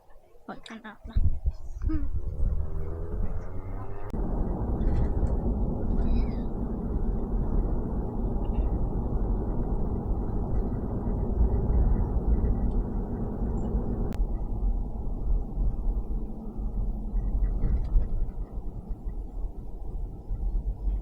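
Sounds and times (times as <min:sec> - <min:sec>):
truck road and engine rumble: 0:00.6 - 0:21.0.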